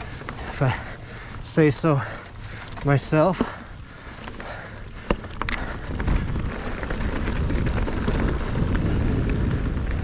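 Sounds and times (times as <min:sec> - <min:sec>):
bike rattling clicks: 0:00.0 - 0:10.0
bike tyres rolling on dirt: 0:00.0 - 0:10.0
wind rumble on microphone: 0:03.7 - 0:10.0.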